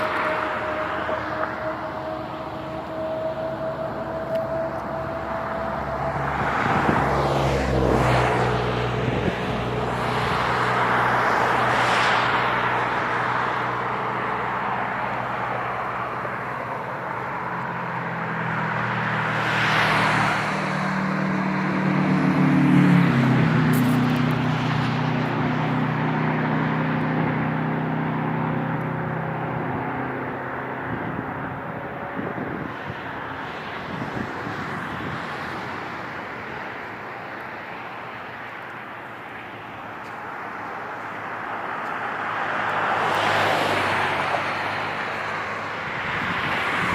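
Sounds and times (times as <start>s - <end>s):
engine humming: 0.0s - 19.7s
vehicles rushing past: 0.0s - 46.9s.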